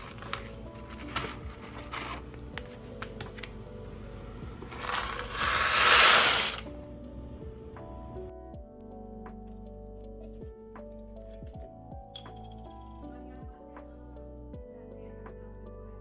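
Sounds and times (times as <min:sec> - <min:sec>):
scraping and rustling noise: 0:00.0 - 0:03.5, 0:04.6 - 0:06.7
soft background music: 0:00.0 - 0:16.0
loud rush: 0:04.9 - 0:06.7.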